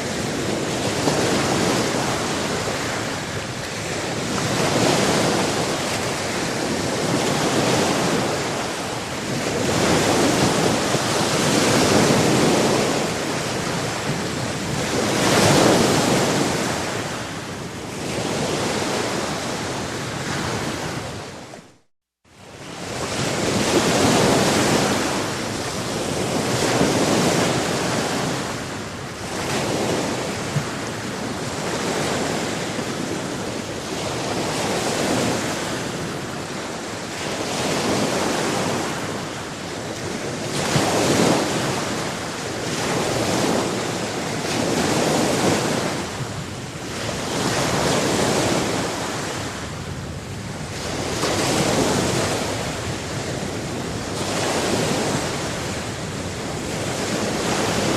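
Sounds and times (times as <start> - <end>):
sea waves washing onto shore: 0.0 - 21.8, 22.4 - 57.9.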